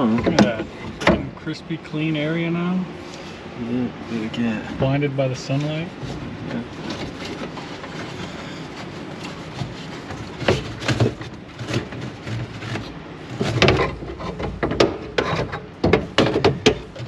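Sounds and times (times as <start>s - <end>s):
knocks and clicks from handling parts: 13.4s - 17.0s.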